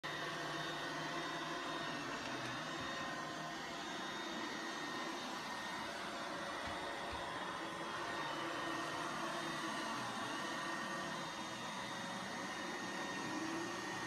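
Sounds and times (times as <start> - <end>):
robot vacuum running: 0.1 - 14.0.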